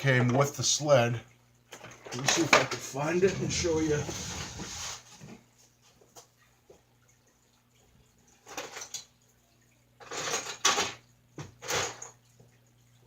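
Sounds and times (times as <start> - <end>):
rummaging through small hard parts: 10.0 - 11.0.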